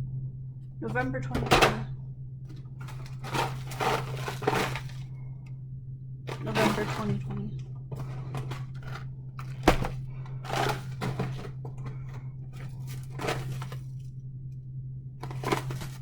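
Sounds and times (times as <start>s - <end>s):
steady low hum: 0.0s - 16.0s
packages rustling and clunking: 1.0s - 1.9s, 2.5s - 5.2s, 6.3s - 14.2s, 15.2s - 16.0s
frozen food packages knocking: 2.5s - 5.1s, 6.3s - 14.0s, 15.2s - 16.0s.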